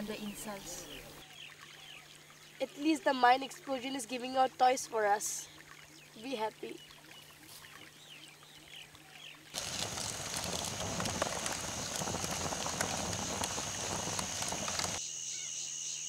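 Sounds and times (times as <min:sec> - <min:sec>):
rapid small clicks and rustles: 0:09.6 - 0:15.0
crickets chirping: 0:09.6 - 0:16.0.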